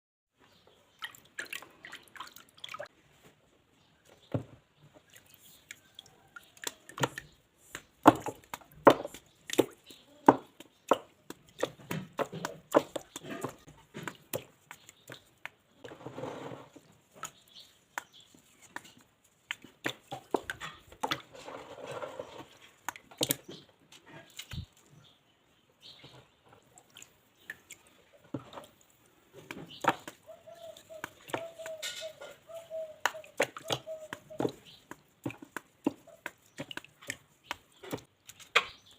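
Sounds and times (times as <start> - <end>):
dried mud crunching and crumbling: 6.4 - 25.2.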